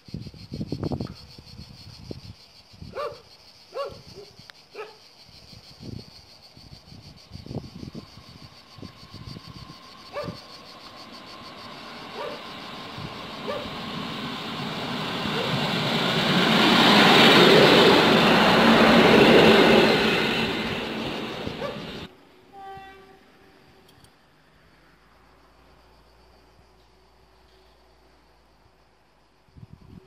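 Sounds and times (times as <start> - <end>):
dog barking: 2.9 - 5.0, 10.1 - 10.4, 12.2 - 12.4, 13.4 - 13.8, 21.6 - 21.9
train passing: 7.0 - 23.8.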